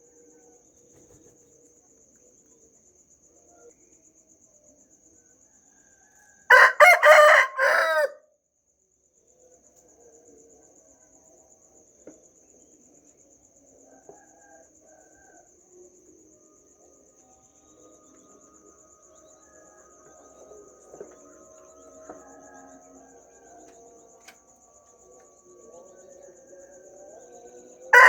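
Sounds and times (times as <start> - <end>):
crickets chirping: 0.0 - 28.0
rooster crowing: 5.4 - 8.2, 21.2 - 23.8.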